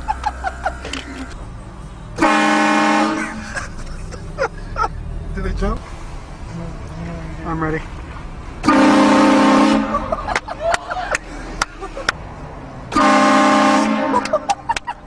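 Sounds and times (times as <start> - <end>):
air train horn blasts: 2.2 - 3.4, 8.6 - 10.0, 12.9 - 14.3.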